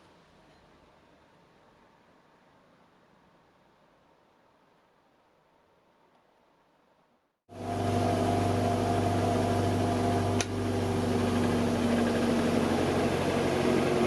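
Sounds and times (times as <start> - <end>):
bench grinder motor humming: 7.5 - 14.0.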